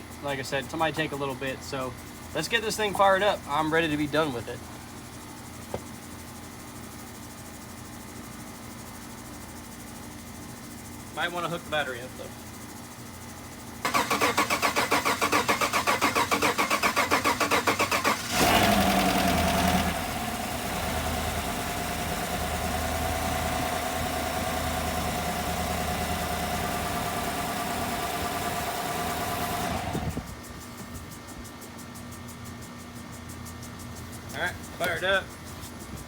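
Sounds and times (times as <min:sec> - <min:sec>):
engine starter cranking: 0:13.8 - 0:21.2, 0:25.4 - 0:30.2
engine idling: 0:13.8 - 0:30.3.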